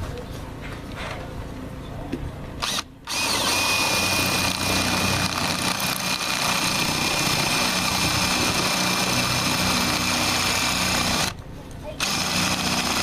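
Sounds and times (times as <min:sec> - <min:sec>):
electric drill grinding into wall: 0:02.6 - 0:11.4, 0:12.0 - 0:13.0.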